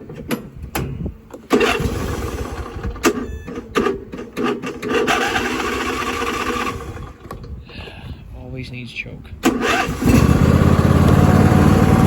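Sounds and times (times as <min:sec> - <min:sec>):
electric starter cranking engine: 0:01.5 - 0:07.3, 0:09.4 - 0:12.0.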